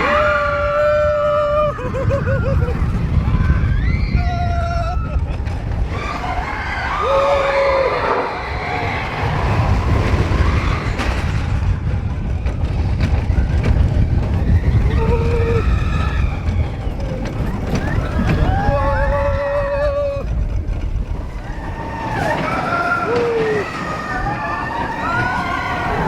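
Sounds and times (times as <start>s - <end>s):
roller coaster rumbling: 0.0s - 26.0s
wind on microphone: 0.0s - 26.0s
rider crying out: 17.4s - 20.7s.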